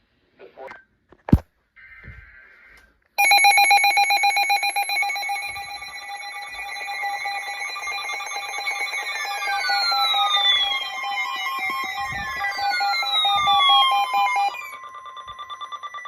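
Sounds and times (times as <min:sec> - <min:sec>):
pulsing multi-tone alarm: 0:03.2 - 0:16.0.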